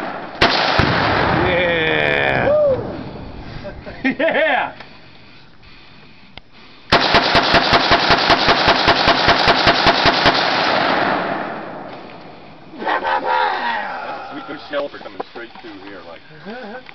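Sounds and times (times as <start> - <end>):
rapid rifle shots: 0.0 - 1.3, 6.9 - 11.7
gunshot echo: 0.0 - 1.8, 6.9 - 12.0.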